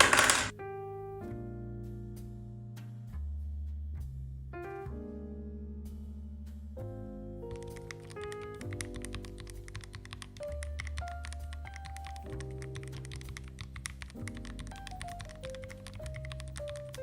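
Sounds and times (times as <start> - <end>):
fast keyboard typing: 0.0 - 0.5, 7.5 - 17.0
background music: 0.0 - 17.0.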